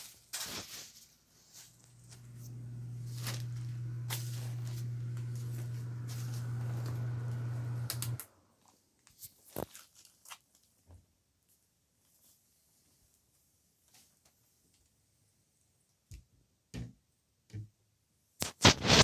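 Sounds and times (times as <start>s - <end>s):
low electrical hum: 1.7s - 8.3s.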